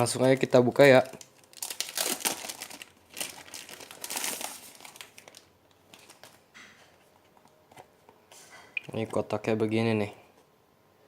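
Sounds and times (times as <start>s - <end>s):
packaging crinkling and rustling: 0.0s - 6.5s.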